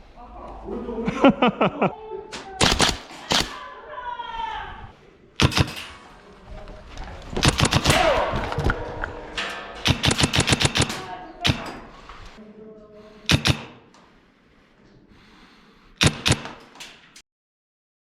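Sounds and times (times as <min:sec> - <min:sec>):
airsoft gun firing: 0:02.6 - 0:03.7, 0:05.4 - 0:05.9, 0:07.4 - 0:08.6, 0:09.4 - 0:11.8, 0:13.3 - 0:13.8, 0:16.0 - 0:16.6.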